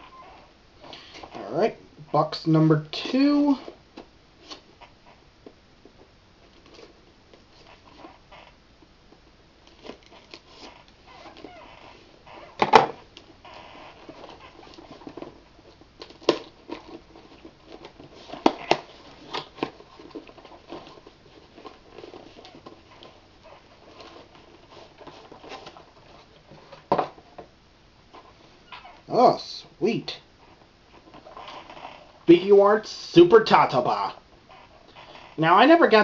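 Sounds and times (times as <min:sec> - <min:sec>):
cardboard box rustling: 0:14.0 - 0:27.5.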